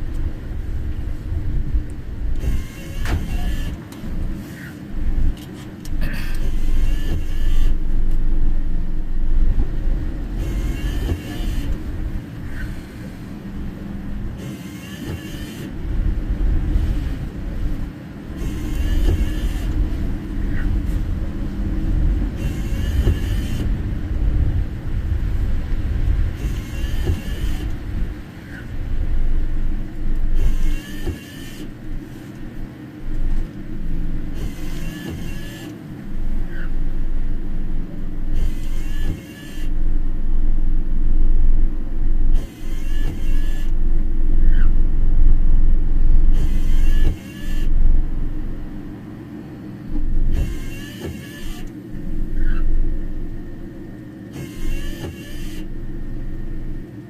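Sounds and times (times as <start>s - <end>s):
engine and tyre rumble: 0.0s - 57.0s
windscreen wipers squeaking swish: 0.1s - 39.9s, 42.2s - 48.4s, 50.0s - 56.9s
heavy rain: 15.7s - 30.7s.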